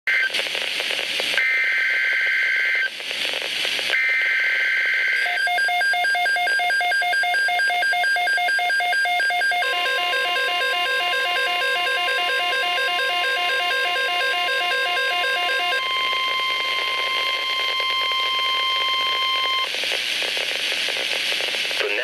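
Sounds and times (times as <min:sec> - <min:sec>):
two-tone data bursts: 0:03.9 - 0:19.7
steady alarm tone: 0:05.2 - 0:19.7.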